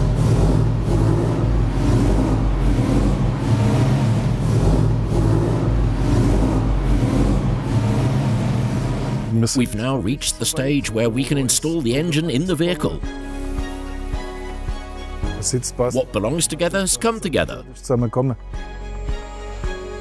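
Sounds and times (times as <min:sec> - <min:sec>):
race car engine running: 0:00.0 - 0:09.4.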